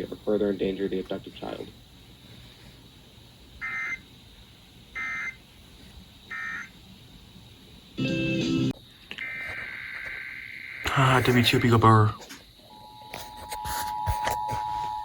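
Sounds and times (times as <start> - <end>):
broadcast audio: 10.8 - 12.4.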